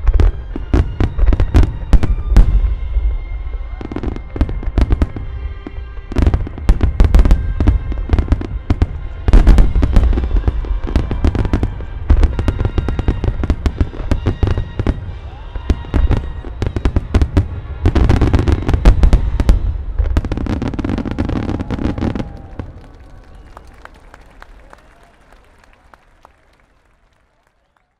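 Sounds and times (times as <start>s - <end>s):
music soundtrack: 0.0s - 21.4s
fireworks bursting and crackling: 0.0s - 25.8s.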